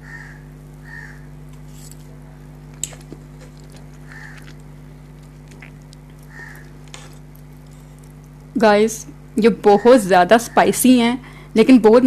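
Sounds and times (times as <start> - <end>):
low electrical hum: 0.0 - 12.0
person chewing noodles: 1.6 - 8.5.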